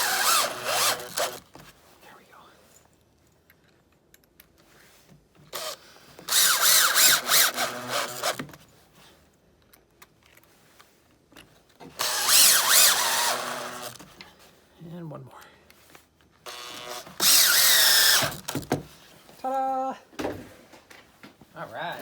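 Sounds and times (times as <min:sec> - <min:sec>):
power drill driving screw: 0:00.0 - 0:01.4, 0:05.5 - 0:08.5, 0:11.9 - 0:14.0, 0:16.4 - 0:18.7.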